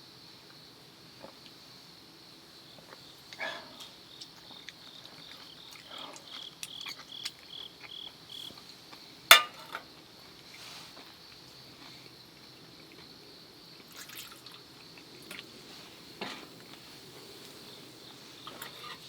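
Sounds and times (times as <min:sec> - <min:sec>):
crickets trilling: 0:00.0 - 0:19.0
sharp clink: 0:09.3 - 0:09.8
tableware clicking: 0:09.3 - 0:09.8.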